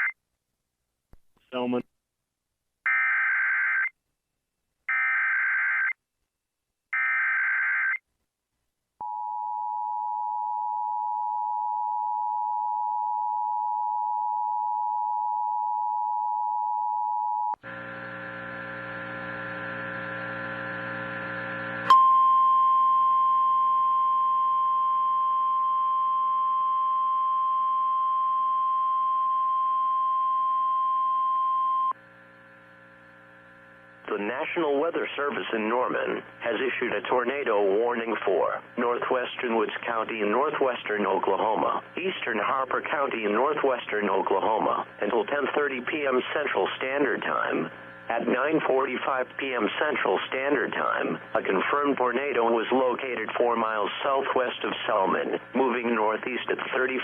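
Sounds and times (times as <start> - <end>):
buzzing hum: 17.6 - 22.4, 27.0 - 34.8.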